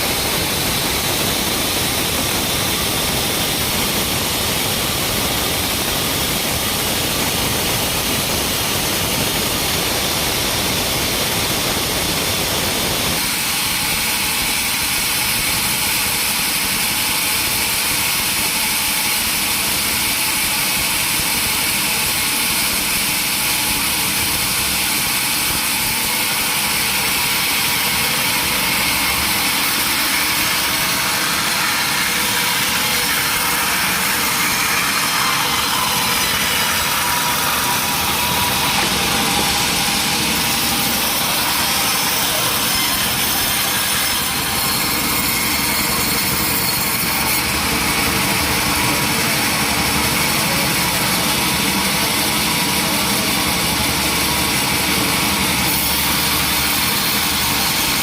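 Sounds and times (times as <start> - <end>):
sawmill saw cutting timber: 0.0 - 58.0.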